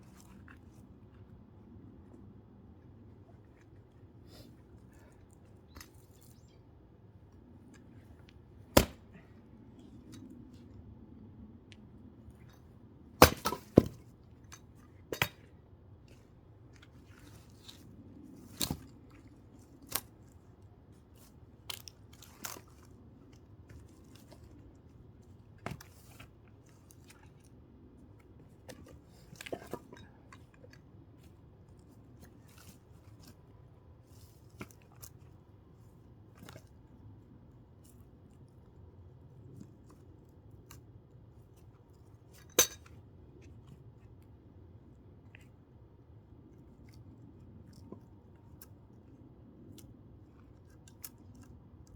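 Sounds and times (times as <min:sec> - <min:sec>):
firewood being split: 0:08.7 - 0:09.3, 0:13.2 - 0:14.0.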